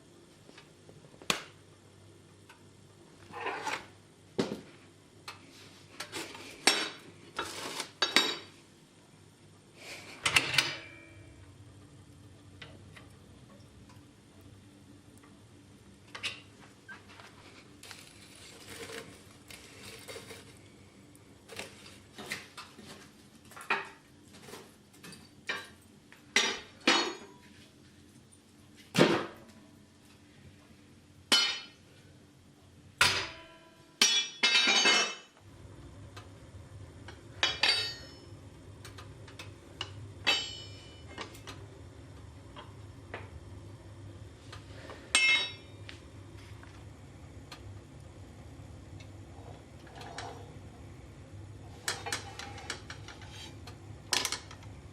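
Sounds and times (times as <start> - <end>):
hammer striking steel on anvil: 33.0 - 35.2, 37.4 - 38.2, 40.2 - 41.0, 45.1 - 45.7.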